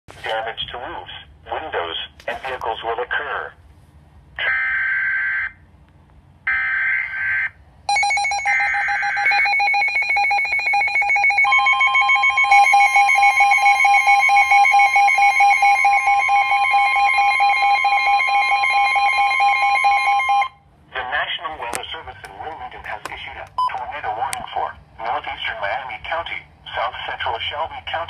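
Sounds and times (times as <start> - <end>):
pulsing alarm tone: 6.5 - 20.6
steady high alert tone: 6.5 - 20.6.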